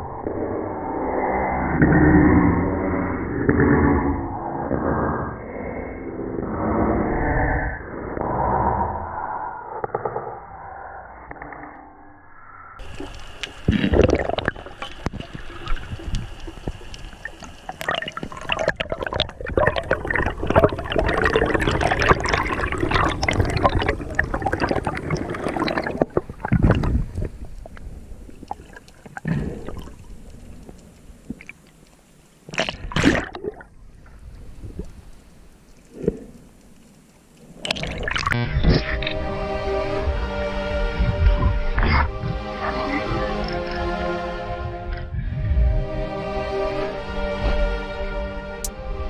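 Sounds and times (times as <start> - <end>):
sea water splashing and gurgling: 12.8 - 48.1.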